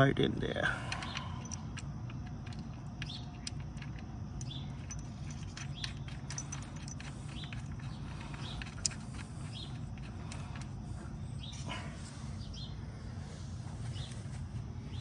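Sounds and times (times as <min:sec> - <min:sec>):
steady low hum: 0:00.0 - 0:15.0
small birds chirping: 0:00.8 - 0:15.0.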